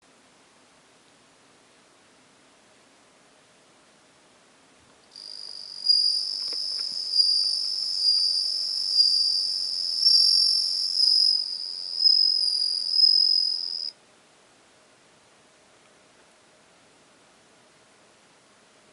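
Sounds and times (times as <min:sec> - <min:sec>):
cricket trilling: 0:05.1 - 0:13.9.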